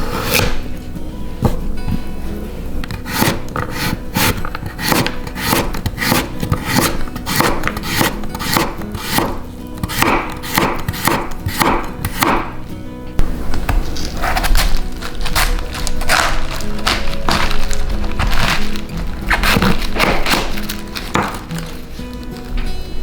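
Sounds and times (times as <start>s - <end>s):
knife chopping on cutting board: 0.1s - 0.6s, 2.9s - 12.6s, 13.6s - 21.5s.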